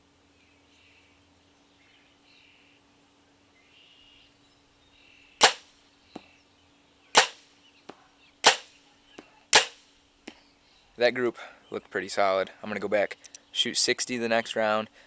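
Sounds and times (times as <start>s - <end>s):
faint bird chirps: 3.5s - 9.6s
bow string snap: 5.4s - 5.6s, 7.2s - 7.4s, 8.5s - 8.7s, 9.6s - 9.8s
arrow hitting target: 5.4s - 5.7s, 7.2s - 7.4s, 8.5s - 8.7s, 9.6s - 9.8s.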